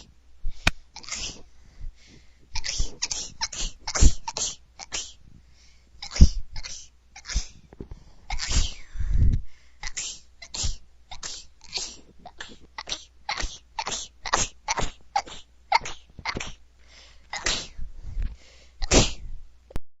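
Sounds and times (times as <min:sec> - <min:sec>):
woman sneezing: 0:08.3 - 0:08.8, 0:09.8 - 0:16.6, 0:17.4 - 0:17.8, 0:18.8 - 0:19.3.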